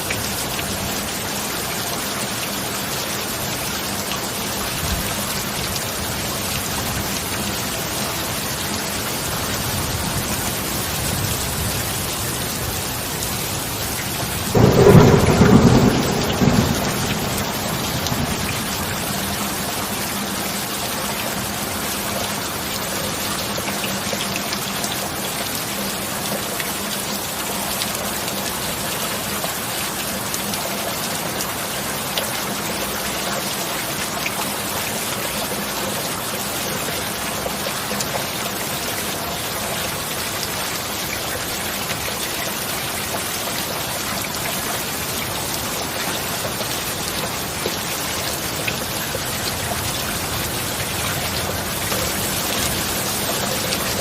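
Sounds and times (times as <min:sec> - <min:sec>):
heavy rain: 0:00.0 - 0:54.0
thunderclap rumbling: 0:14.2 - 0:19.3.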